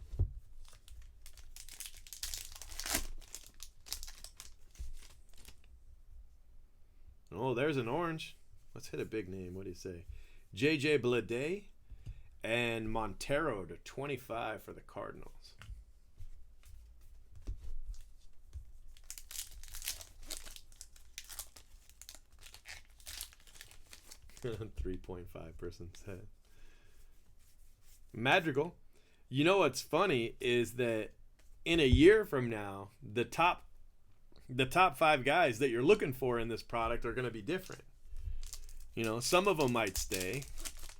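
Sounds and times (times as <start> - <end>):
foil wrapper crinkling and tearing: 0.6 - 5.7, 18.9 - 24.6, 37.6 - 40.9.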